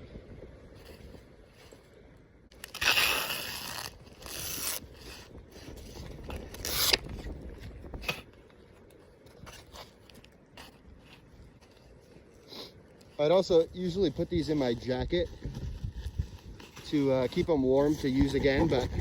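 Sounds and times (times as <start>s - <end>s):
loud rasping rips: 2.5s - 7.3s.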